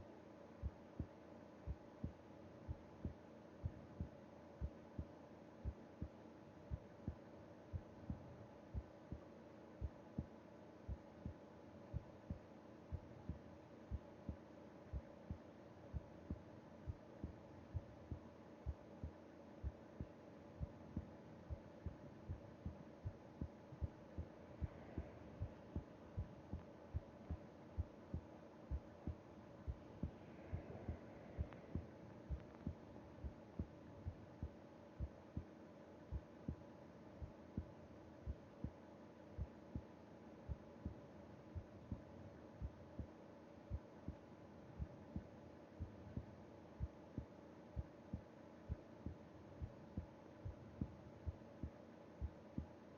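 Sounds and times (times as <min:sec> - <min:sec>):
faint steady hum: 0:00.0 - 0:52.9
human heartbeat thumps: 0:10.9 - 0:34.5, 0:44.8 - 0:52.7.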